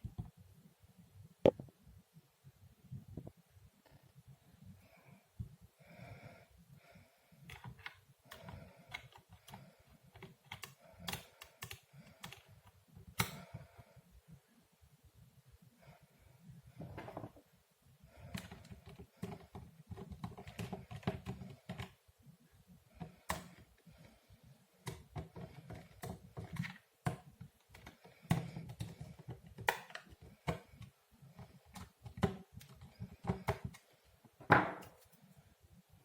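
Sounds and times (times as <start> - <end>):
hands tapping on laptop: 18.3 - 22.0, 24.8 - 33.8.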